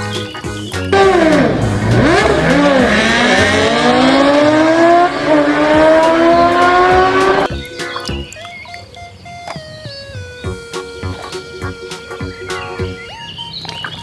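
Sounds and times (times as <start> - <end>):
racing car engine accelerating: 1.0 - 7.5.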